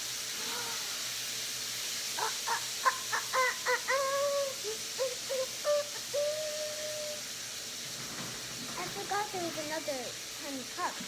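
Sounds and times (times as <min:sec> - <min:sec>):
child vocalizing: 0:03.3 - 0:07.2.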